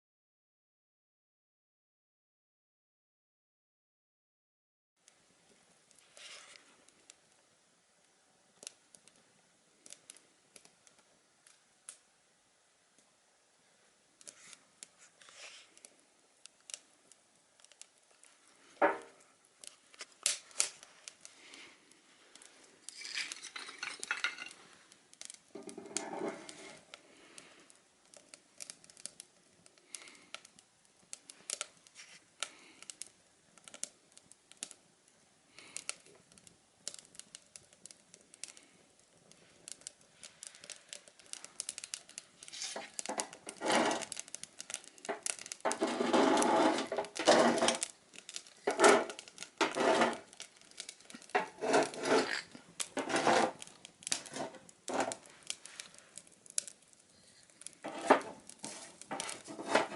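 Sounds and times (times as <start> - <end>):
rustling: 5.9 - 7.1, 14.2 - 16.0, 16.6 - 30.3, 31.1 - 32.8, 37.0 - 59.9
metal clinks and knocks: 22.9 - 24.6.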